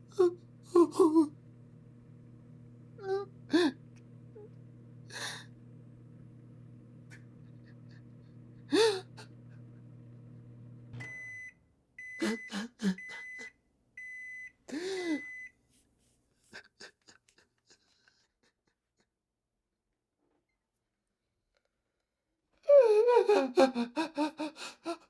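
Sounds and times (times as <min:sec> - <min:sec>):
microwave oven humming: 0:00.0 - 0:15.5.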